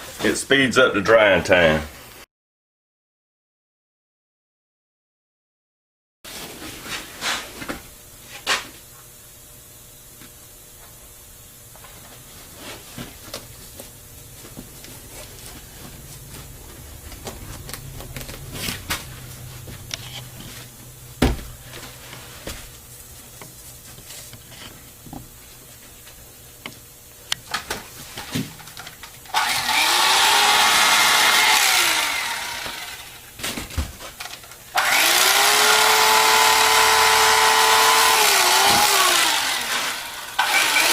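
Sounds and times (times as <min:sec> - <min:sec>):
small electric power tool running: 0:29.3 - 0:33.3, 0:34.7 - 0:40.9.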